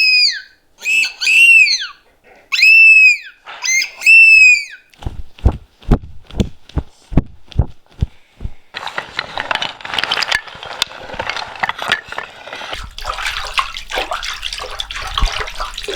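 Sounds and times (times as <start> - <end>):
low thumps: 5.0 - 8.6
running water splashing: 12.7 - 15.9.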